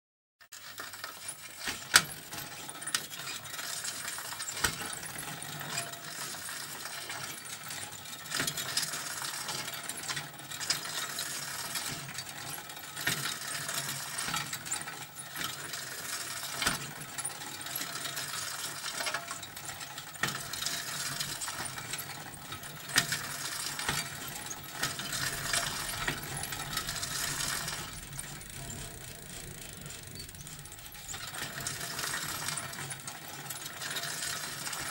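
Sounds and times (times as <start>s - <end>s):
bicycle chain rattling: 0.6s - 34.9s
freewheel ticking: 0.6s - 34.9s.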